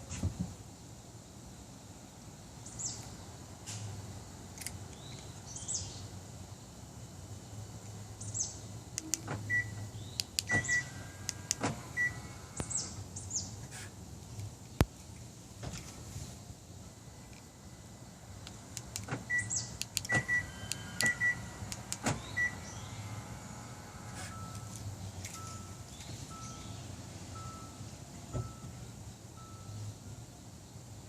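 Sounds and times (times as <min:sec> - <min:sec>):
car electric motors whirring: 0:09.0 - 0:14.0, 0:17.2 - 0:27.6
relay and actuator clicks: 0:18.4 - 0:22.2.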